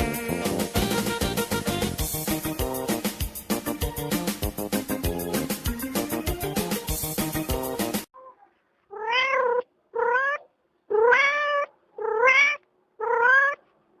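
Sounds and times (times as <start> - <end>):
background music: 0.0 - 8.1
cat meowing: 8.2 - 13.6.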